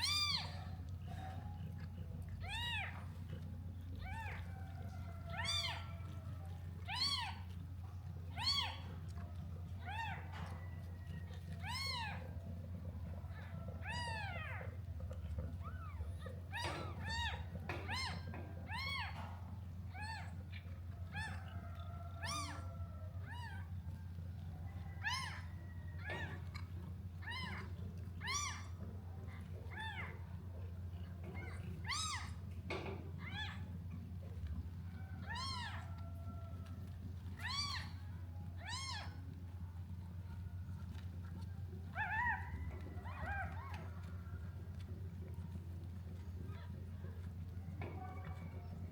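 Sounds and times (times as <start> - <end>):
kittens mewing: 11.7 - 12.4, 13.3 - 19.2, 21.1 - 23.8, 38.6 - 39.2.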